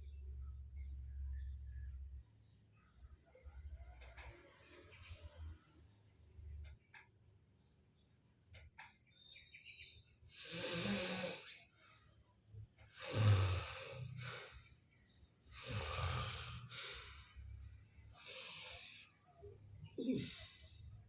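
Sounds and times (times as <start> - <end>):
person snoring: 10.4 - 11.7, 12.9 - 14.6, 15.5 - 17.3, 18.2 - 19.1, 20.0 - 20.7.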